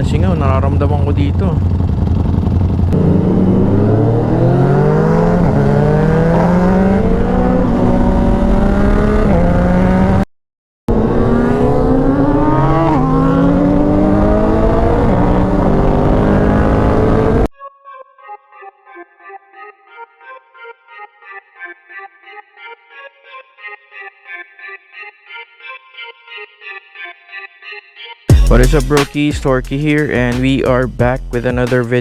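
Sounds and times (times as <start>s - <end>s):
motorcycle engine accelerating: 0.0s - 10.3s, 10.9s - 17.5s.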